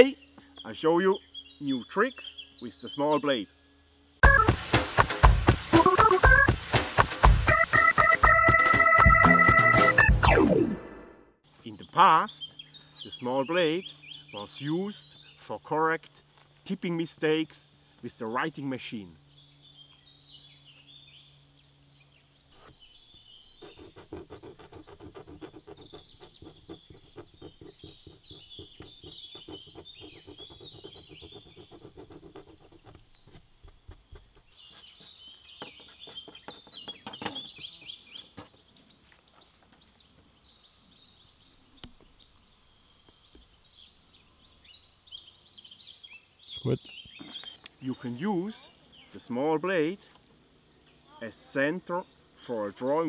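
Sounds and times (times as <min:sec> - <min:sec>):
birds chirping: 0:00.0 - 0:04.7, 0:05.6 - 0:53.0.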